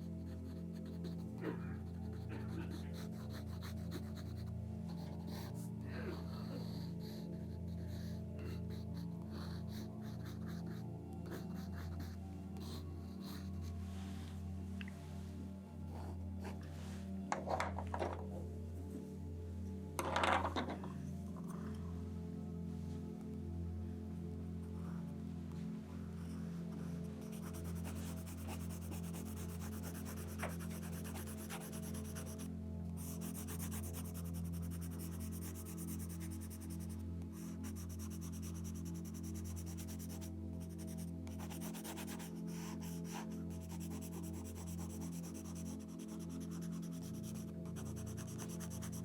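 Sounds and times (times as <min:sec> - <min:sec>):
soft background music: 0:00.0 - 0:49.0
pencil scratching on paper: 0:00.1 - 0:05.7, 0:06.5 - 0:13.8, 0:26.8 - 0:49.0.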